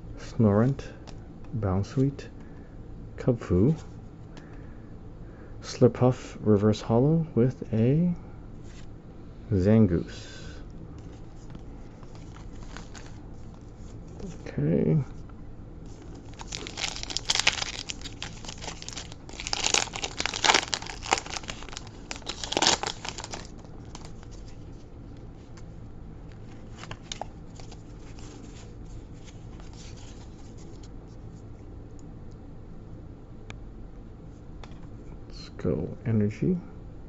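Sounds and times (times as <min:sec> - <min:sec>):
foil wrapper crinkling and tearing: 0:12.0 - 0:13.2, 0:15.9 - 0:24.6.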